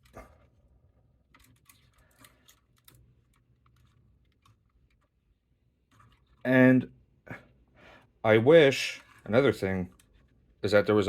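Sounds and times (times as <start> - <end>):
plastic parts clicking: 1.2 - 6.5, 9.0 - 10.5.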